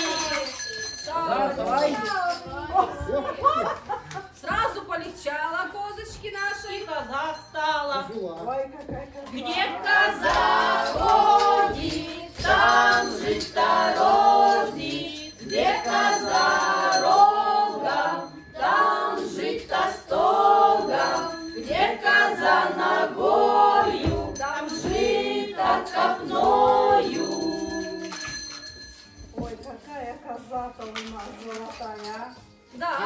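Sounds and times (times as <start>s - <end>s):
group of voices singing a carol: 9.3s - 28.4s.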